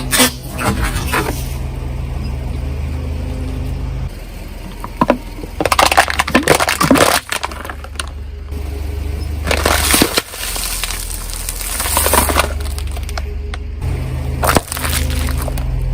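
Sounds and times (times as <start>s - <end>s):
car engine low hum: 0.0s - 15.9s
tyre crushing brittle objects: 4.9s - 8.2s, 9.4s - 13.3s, 14.4s - 15.9s.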